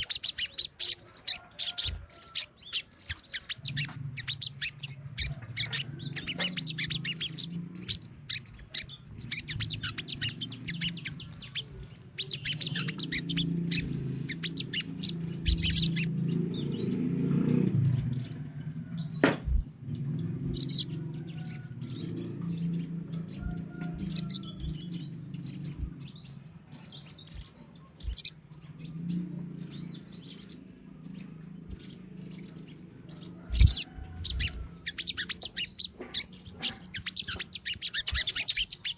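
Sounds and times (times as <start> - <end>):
birds chirping and twittering: 0.0 - 38.9
steady low rumble: 3.4 - 37.1
sharp knocks: 19.2 - 19.6.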